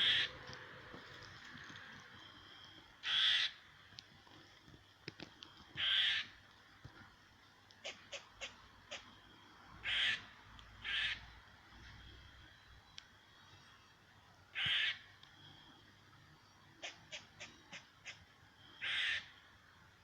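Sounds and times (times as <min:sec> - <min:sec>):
squirrel alarm calls: 0:00.0 - 0:00.6, 0:03.0 - 0:03.7, 0:05.7 - 0:06.4, 0:07.8 - 0:09.2, 0:09.8 - 0:11.3, 0:14.5 - 0:15.1, 0:16.7 - 0:19.4.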